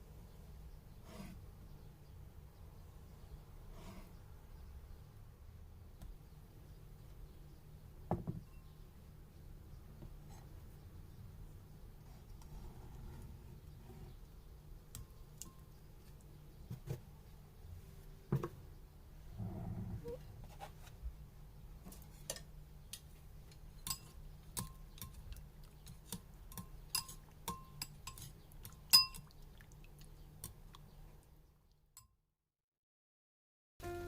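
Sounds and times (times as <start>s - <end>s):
faint low hum: 0.0s - 31.8s
utensils clinking on dishes: 23.8s - 25.2s, 26.5s - 29.3s.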